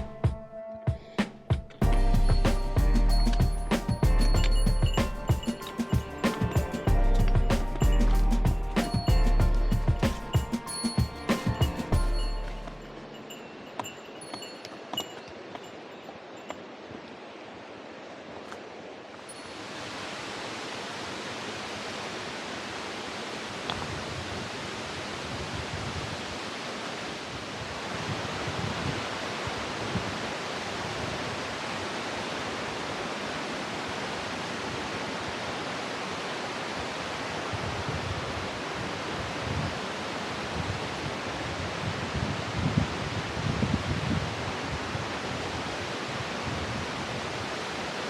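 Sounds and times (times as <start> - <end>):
water rushing in a gorge: 13.9 - 48.0.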